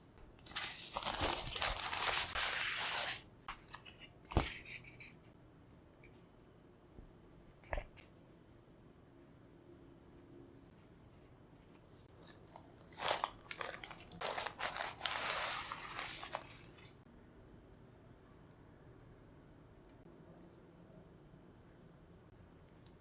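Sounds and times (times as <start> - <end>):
wrapping crinkling and rustling: 0.4 - 3.2, 12.2 - 17.0.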